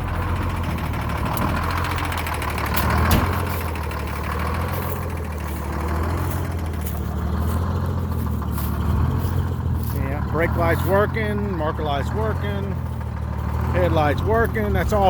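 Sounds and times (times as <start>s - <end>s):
diesel engine idling: 0.0s - 15.0s
brief thump: 3.1s - 3.5s.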